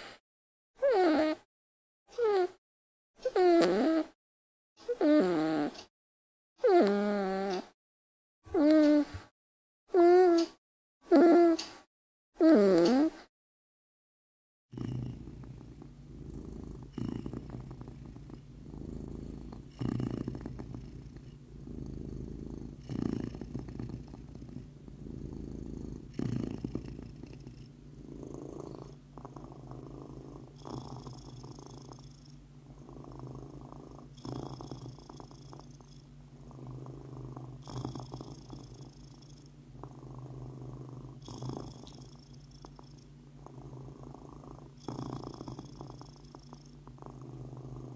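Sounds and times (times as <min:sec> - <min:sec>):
cat purring: 0:04.9 - 0:05.9, 0:06.6 - 0:07.8, 0:08.5 - 0:09.2, 0:14.7 - 0:47.9.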